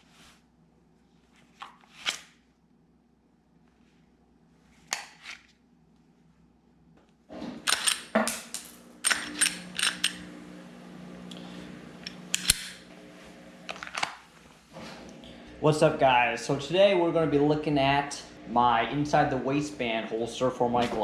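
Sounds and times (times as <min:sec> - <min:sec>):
hard objects clicking: 0:07.6 - 0:10.2
low hum: 0:07.7 - 0:14.0, 0:14.8 - 0:20.8.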